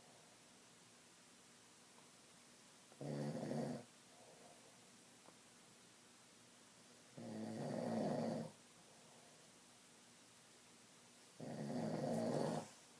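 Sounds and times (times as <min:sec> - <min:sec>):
person snoring: 0:03.0 - 0:03.9, 0:07.2 - 0:08.6, 0:11.4 - 0:12.7.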